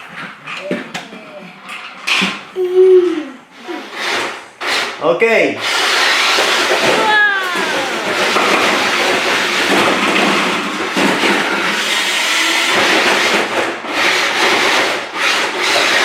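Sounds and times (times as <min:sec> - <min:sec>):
toy car motor rattling: 0:03.6 - 0:05.0, 0:05.6 - 0:16.0.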